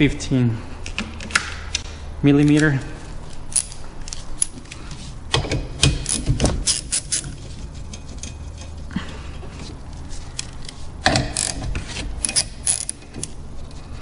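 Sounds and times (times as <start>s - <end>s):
ratchet wrench clicking: 12.2s - 13.3s.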